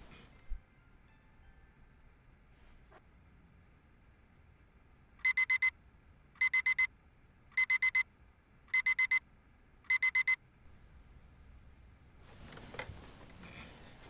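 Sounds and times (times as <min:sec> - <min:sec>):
alarm clock beeping: 0:05.2 - 0:05.7, 0:06.4 - 0:06.9, 0:07.6 - 0:08.0, 0:08.7 - 0:09.2, 0:09.9 - 0:10.4.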